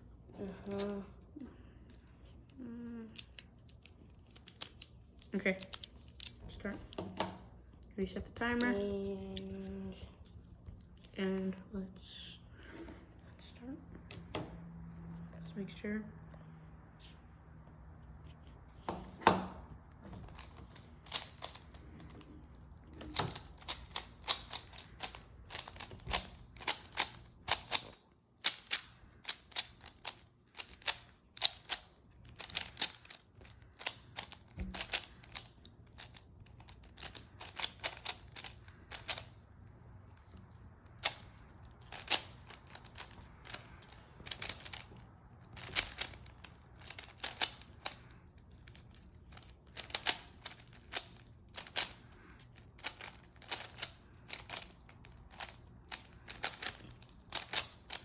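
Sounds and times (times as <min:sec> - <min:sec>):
puzzle cube layers clicking: 0:20.3 - 0:39.4, 0:40.4 - 0:58.0.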